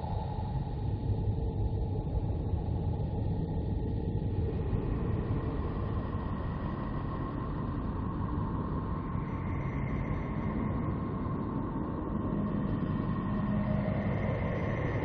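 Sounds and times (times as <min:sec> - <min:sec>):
low rumbling noise with held tones: 0:00.0 - 0:15.0.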